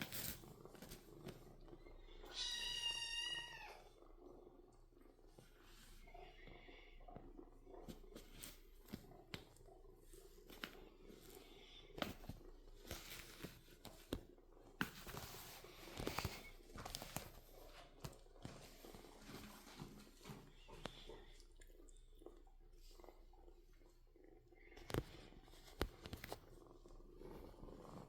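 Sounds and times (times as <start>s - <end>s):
kitten scratching and rustling: 7.8s - 21.5s, 24.8s - 28.0s.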